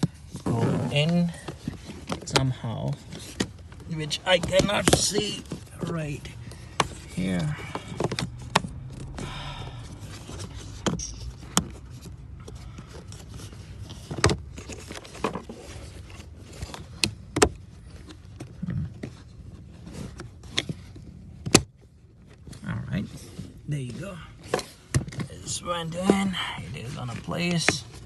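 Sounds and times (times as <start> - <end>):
plastic knocks and scraping: 0.0 - 9.2, 24.4 - 28.0.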